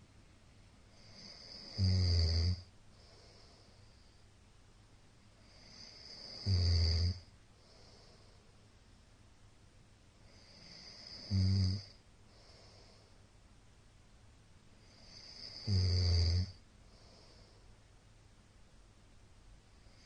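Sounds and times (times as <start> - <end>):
man snoring deeply: 1.0 - 2.7, 5.5 - 8.0, 10.3 - 12.8, 14.8 - 17.2.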